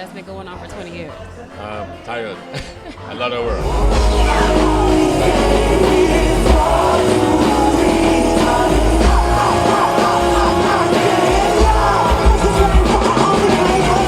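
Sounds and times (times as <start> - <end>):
person singing: 3.5 - 14.0
music with heavy bass beat: 3.6 - 14.0.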